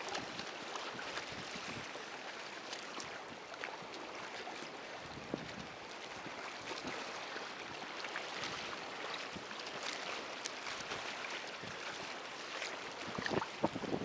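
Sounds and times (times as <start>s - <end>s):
seawater splashing: 0.0s - 14.0s
wind noise on microphone: 0.1s - 1.9s, 5.0s - 7.1s, 11.5s - 12.1s, 13.0s - 14.0s.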